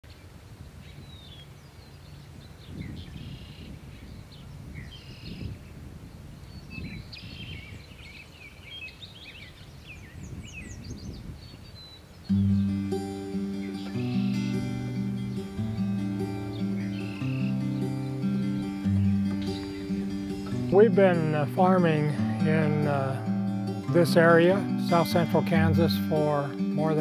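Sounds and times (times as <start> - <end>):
low wind rumble: 2.2 - 12.6
birds chirping and calling: 6.5 - 27.0
strummed acoustic guitar music: 12.3 - 27.0.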